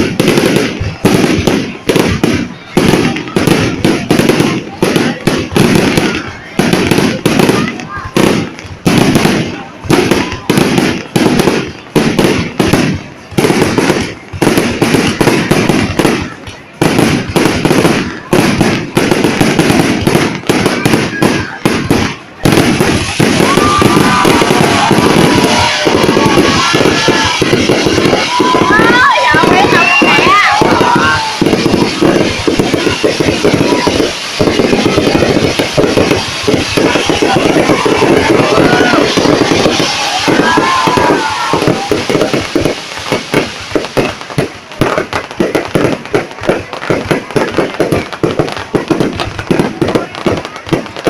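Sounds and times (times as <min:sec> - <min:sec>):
firework shells bursting: 0:16.9 - 0:50.1.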